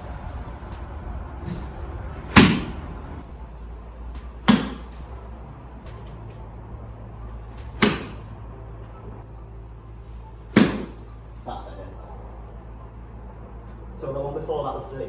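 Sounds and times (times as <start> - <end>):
low hum: 0.0 - 15.0
golf club striking ball: 2.3 - 2.8, 4.4 - 5.0, 7.7 - 8.3, 10.5 - 11.0.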